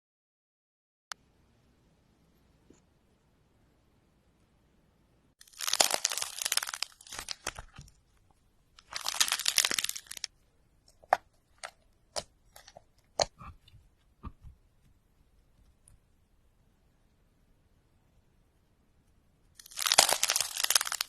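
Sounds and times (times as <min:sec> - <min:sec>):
clay cracking and crunching: 0:05.4 - 0:08.1, 0:08.8 - 0:13.6, 0:19.6 - 0:21.0.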